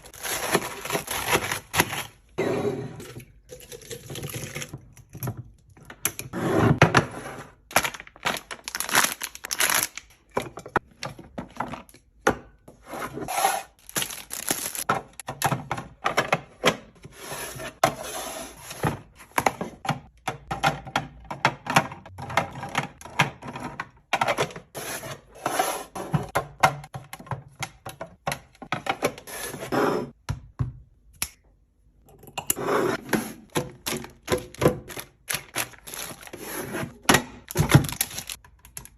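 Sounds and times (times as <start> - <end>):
items clicking and knocking: 10.0 - 12.8, 13.9 - 17.1, 18.7 - 24.8, 26.1 - 29.3, 32.1 - 38.9.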